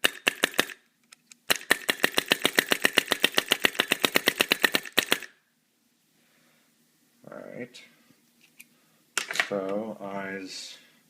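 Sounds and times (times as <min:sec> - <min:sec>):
paintball marker rapid clicking: 0:00.0 - 0:00.8, 0:01.5 - 0:05.3.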